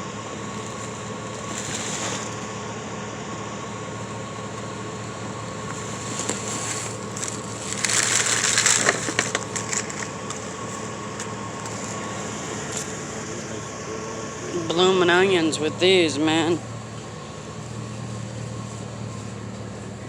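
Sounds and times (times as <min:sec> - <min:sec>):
steady mechanical hum: 0:00.0 - 0:20.0
rustling and clattering: 0:05.7 - 0:12.0.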